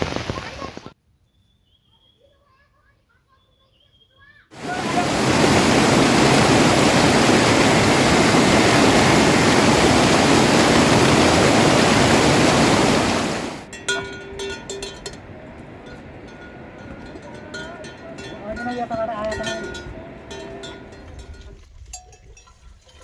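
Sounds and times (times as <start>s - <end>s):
water rushing: 4.6s - 21.4s.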